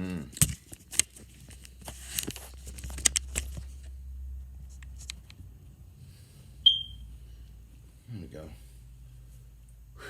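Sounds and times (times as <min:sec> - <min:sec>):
clicks and rustling: 0:00.4 - 0:03.9
smoke detector chirp: 0:06.6 - 0:07.1.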